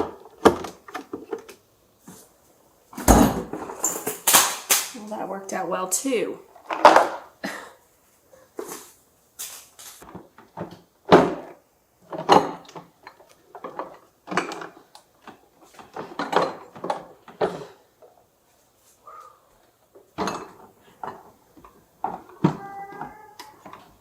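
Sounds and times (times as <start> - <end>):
household things knocking and clattering: 0.0 - 1.6, 2.9 - 5.0, 6.6 - 7.3, 10.0 - 18.2, 19.9 - 24.0.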